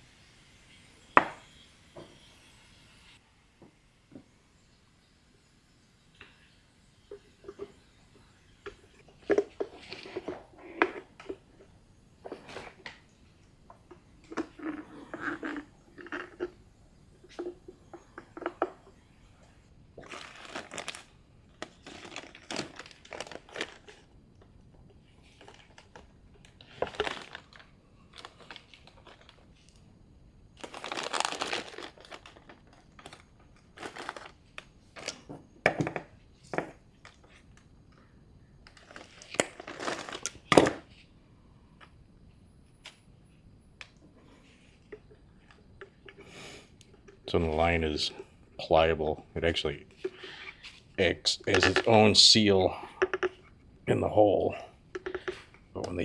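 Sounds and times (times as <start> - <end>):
hands rustling small parts: 20.0 - 24.1, 30.6 - 35.3, 49.9 - 53.5.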